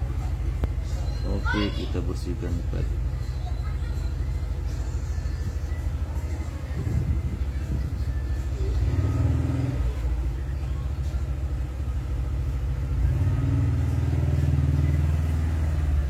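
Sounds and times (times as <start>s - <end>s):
electric blower fan drone: 4.3s - 16.0s.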